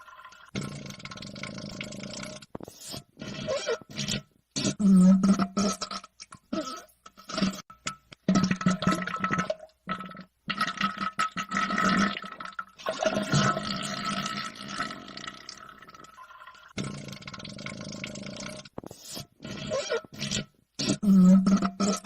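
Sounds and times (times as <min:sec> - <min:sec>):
wet sputtering fart noises: 0:00.0 - 0:07.7, 0:16.7 - 0:22.0.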